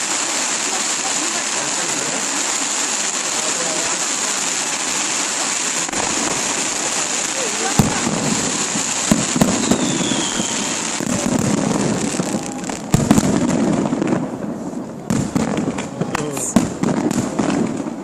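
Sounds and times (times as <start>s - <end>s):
fireworks bangs: 0.0s - 18.0s
fireworks crackling: 0.0s - 18.0s.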